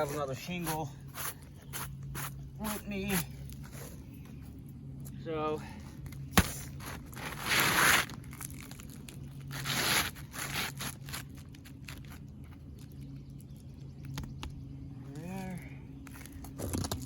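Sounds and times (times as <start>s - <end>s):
roof shingle scraping: 0.0s - 4.4s, 6.2s - 12.6s.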